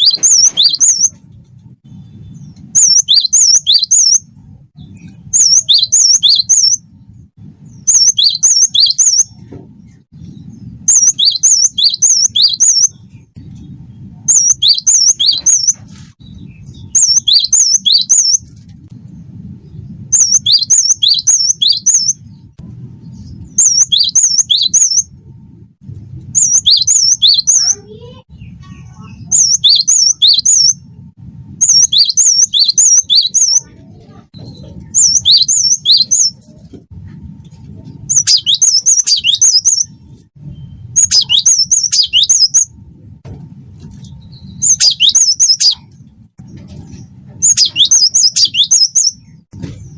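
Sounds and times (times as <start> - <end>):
bird singing whistled notes: 0.0 - 1.2, 1.9 - 7.0, 7.6 - 9.4, 10.3 - 13.1, 14.2 - 18.5, 20.1 - 22.3, 23.1 - 25.1, 26.4 - 27.8, 28.4 - 30.8, 31.6 - 33.7, 34.4 - 36.4, 38.1 - 42.7, 44.2 - 45.9, 47.4 - 49.4
low background rumble: 0.0 - 49.9.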